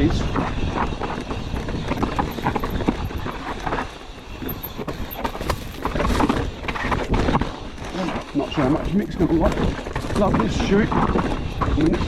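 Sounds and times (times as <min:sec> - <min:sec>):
bike tyres rolling over rocks: 0:00.6 - 0:11.6
bike knocks and rattles: 0:01.4 - 0:07.3.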